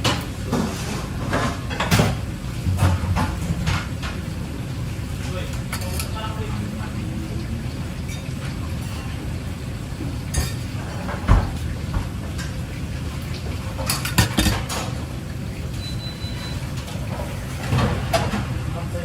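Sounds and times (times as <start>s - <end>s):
dishes and utensils clinking: 5.4s - 6.2s, 10.3s - 11.6s, 13.8s - 15.0s.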